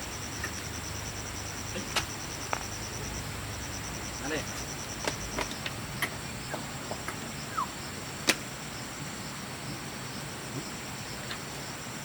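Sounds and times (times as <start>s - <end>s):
insects trilling: 0.0s - 12.0s.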